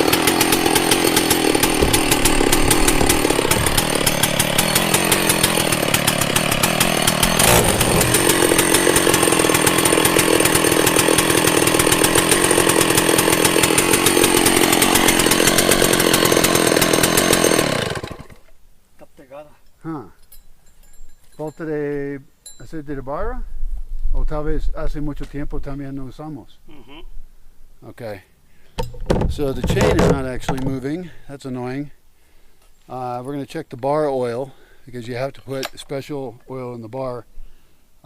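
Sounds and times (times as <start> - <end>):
two-stroke chainsaw engine running: 0.0 - 18.4.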